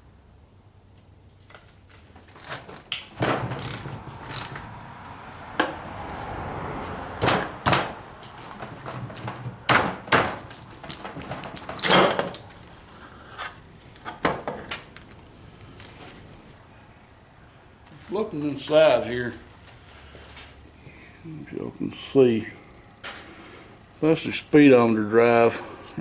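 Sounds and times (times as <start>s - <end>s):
tools knocking and clanking on metal: 2.5s - 4.7s, 5.6s - 5.9s, 6.8s - 12.5s, 14.0s - 14.8s.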